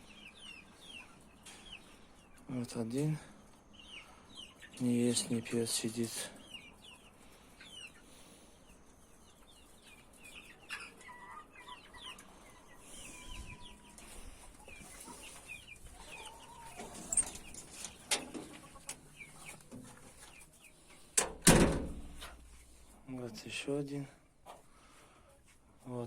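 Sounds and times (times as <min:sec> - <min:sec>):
chickens clucking: 0:00.0 - 0:26.0.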